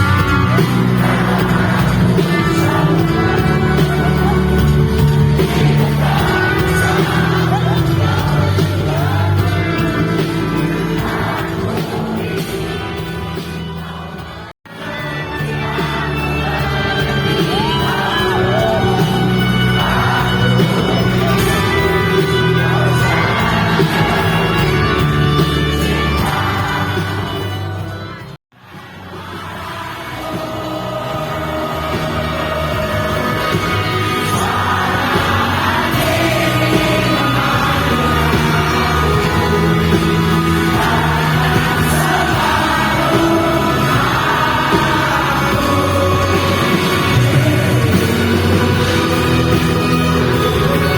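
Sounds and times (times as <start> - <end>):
crowd singing and whooping: 0.0 - 50.9
live pop-rock band playing: 0.0 - 50.9.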